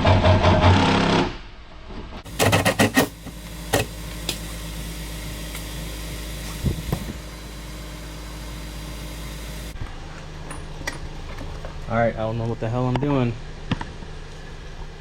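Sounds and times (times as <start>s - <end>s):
low mechanical hum: 1.6s - 15.0s
sharp clicks and knocks: 2.3s - 4.5s.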